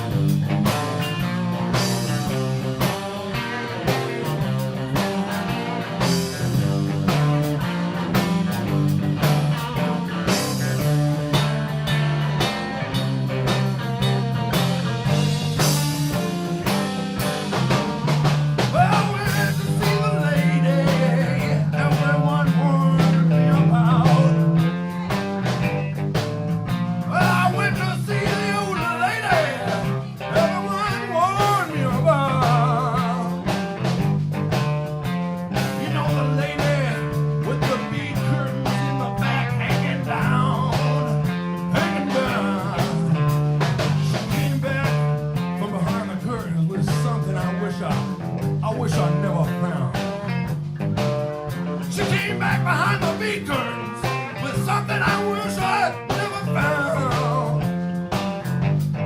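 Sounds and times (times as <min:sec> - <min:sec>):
blues band playing: 0:00.0 - 0:59.0
lead line of bent notes: 0:18.8 - 0:29.0.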